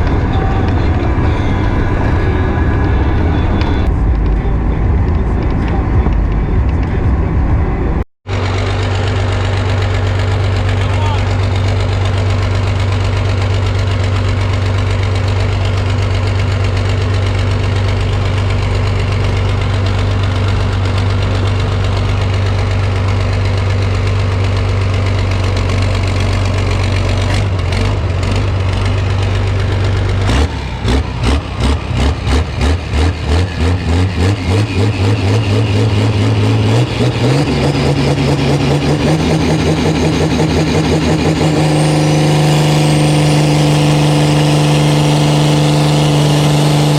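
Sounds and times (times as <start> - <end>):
rhythmic engine pulsing: 0.0 - 26.3
large engine idling: 0.0 - 34.8.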